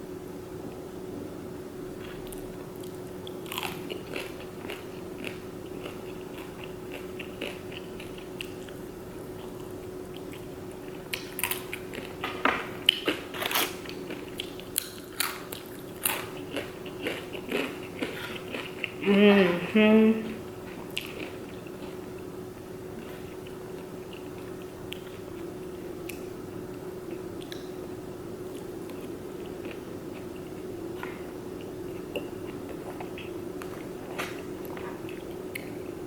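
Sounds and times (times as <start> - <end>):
faint steady hum: 0.0 - 36.0
chewing crispy chicken: 2.1 - 19.0, 20.8 - 22.3, 28.5 - 35.8.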